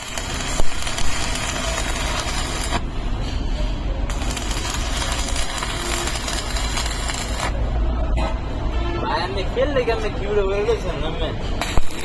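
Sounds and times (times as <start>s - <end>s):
arc welding crackle: 0.0s - 2.9s, 4.1s - 7.6s, 11.6s - 12.0s
welding machine hum: 0.0s - 3.0s, 4.1s - 7.6s, 11.6s - 12.0s.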